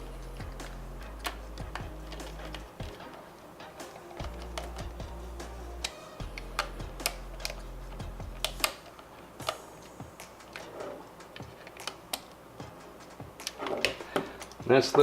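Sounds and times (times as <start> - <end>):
low hum: 0.0 - 3.1.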